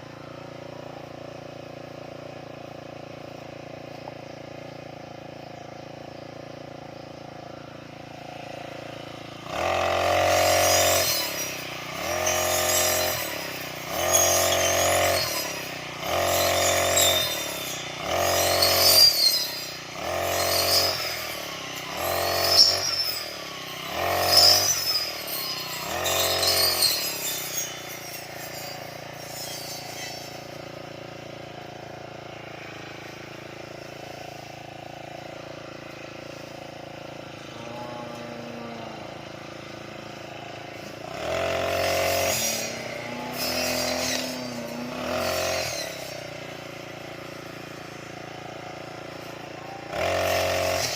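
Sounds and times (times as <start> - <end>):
brush cutter engine revving: 0.0 - 50.9
blade swishing through grass: 9.8 - 37.4, 39.8 - 48.0.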